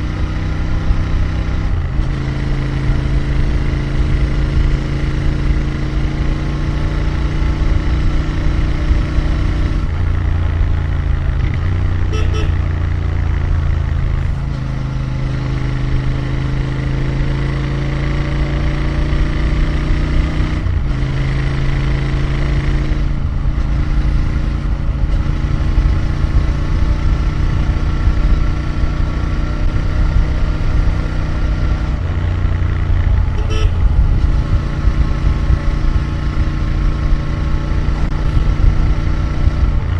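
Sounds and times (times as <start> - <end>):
motorcycle engine and exhaust: 0.0 - 39.9
horn toots: 12.1 - 12.7, 33.3 - 34.1.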